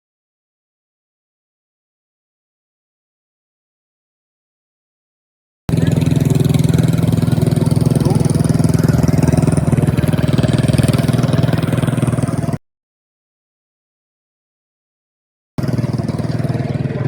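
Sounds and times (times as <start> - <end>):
vehicle engine running steadily: 5.7 - 12.6, 15.6 - 17.0.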